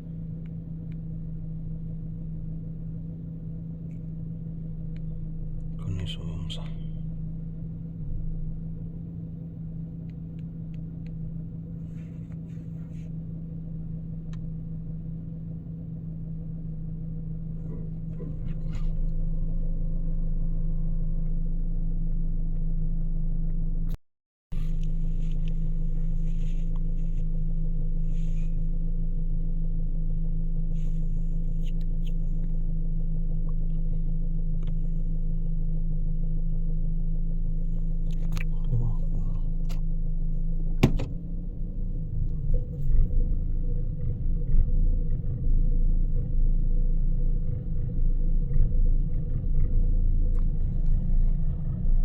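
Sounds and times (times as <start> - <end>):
car engine humming: 0.0 - 23.8, 24.6 - 52.0.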